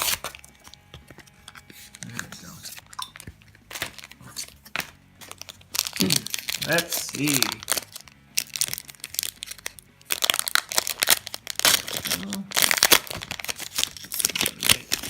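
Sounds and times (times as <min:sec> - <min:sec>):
foil wrapper crinkling: 0:00.0 - 0:15.0.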